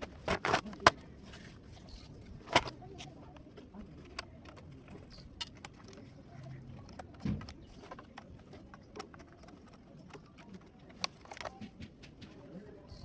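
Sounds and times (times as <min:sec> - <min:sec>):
clicks of laptop parts handled: 0:00.0 - 0:01.0, 0:02.4 - 0:03.1, 0:06.8 - 0:12.4.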